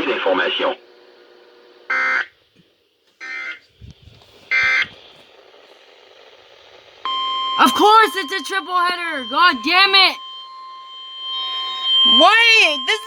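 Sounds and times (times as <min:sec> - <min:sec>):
digital data tone bursts: 0:07.1 - 0:13.0.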